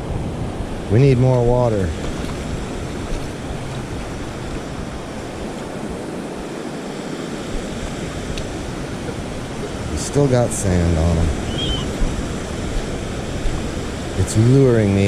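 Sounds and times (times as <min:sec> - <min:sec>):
ocean surf washing: 0:00.0 - 0:15.0.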